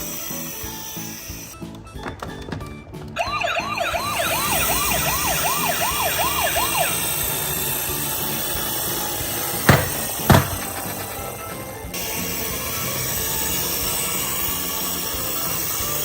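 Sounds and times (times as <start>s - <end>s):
siren yelping: 3.2s - 7.5s
sharp knock: 9.7s - 11.2s.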